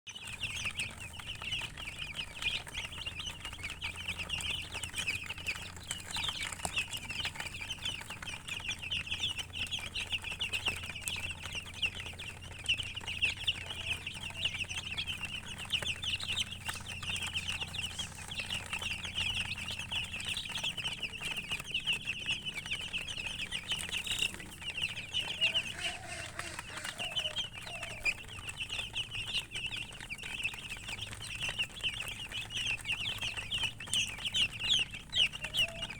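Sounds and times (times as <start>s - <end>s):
chicks peeping: 0.1s - 35.9s
lower bird calls: 0.1s - 35.9s.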